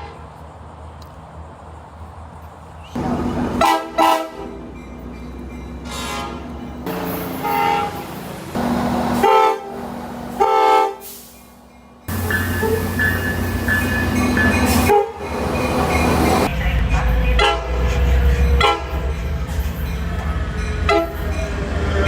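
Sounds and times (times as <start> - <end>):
low train rumble: 0.0 - 22.0
train horn blasts: 3.5 - 4.6, 5.8 - 8.2, 9.0 - 11.1, 14.7 - 15.2, 17.3 - 17.9, 18.6 - 19.0, 20.9 - 21.2.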